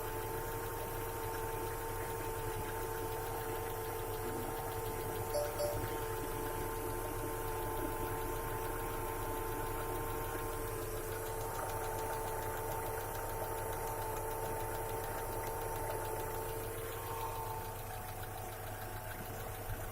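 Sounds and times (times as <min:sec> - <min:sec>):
engine knocking: 0:00.0 - 0:19.9
car engine idling: 0:08.6 - 0:19.9.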